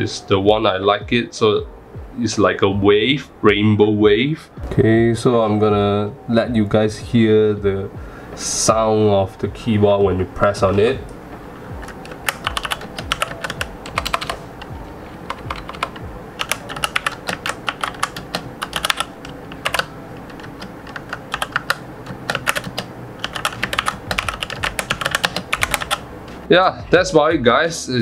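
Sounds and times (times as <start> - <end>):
mechanical keyboard typing: 11.8 - 14.7, 15.3 - 26.0.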